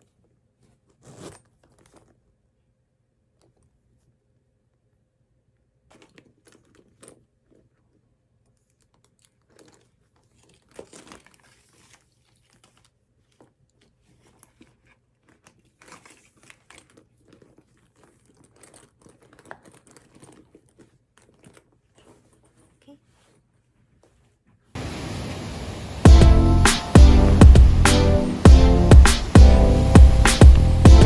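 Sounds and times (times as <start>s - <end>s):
crinkling and rustling: 5.8s - 24.7s.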